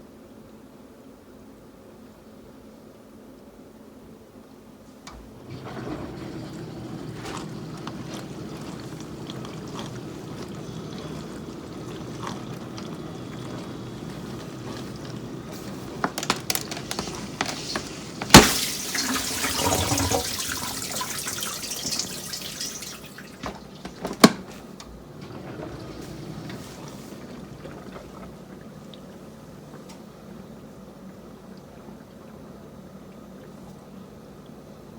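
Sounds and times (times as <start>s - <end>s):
dishwasher humming: 5.0s - 34.9s
water splashing: 5.1s - 30.5s
water swishing: 5.1s - 32.5s.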